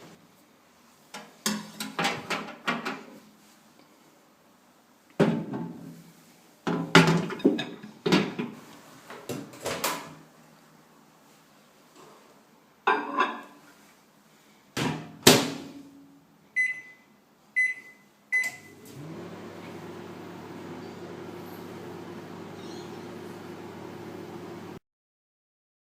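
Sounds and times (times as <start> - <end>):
short keypad beeps: 16.6 - 18.7
microwave oven humming: 17.7 - 24.8.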